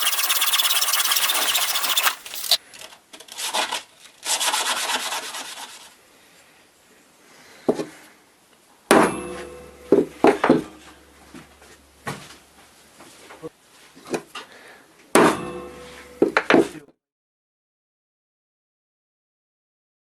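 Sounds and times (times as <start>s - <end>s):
loud steady machine noise: 0.0s - 2.6s
wood being rasped by hand: 0.0s - 2.6s
brief metallic ring: 9.1s - 11.3s, 15.4s - 16.3s.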